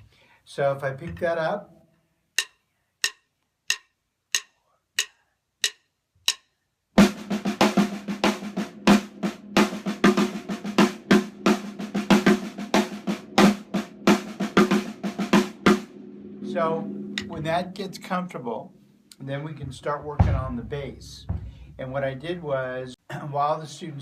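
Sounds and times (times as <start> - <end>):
sharp count-in clicks: 2.4 - 6.5
snare drum played with sticks: 2.4 - 15.9, 19.6 - 21.9.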